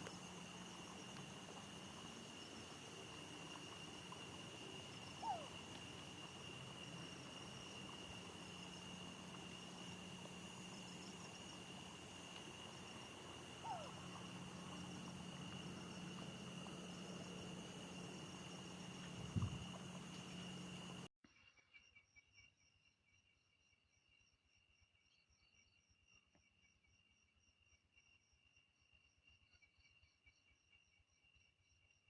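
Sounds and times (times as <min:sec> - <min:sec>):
night insects droning: 0:00.0 - 0:32.0
short falling calls: 0:13.6 - 0:15.2.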